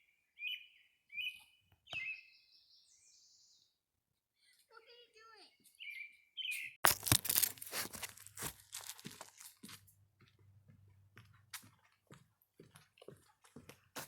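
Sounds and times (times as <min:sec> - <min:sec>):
rustling and tearing crackles: 0:06.8 - 0:09.8.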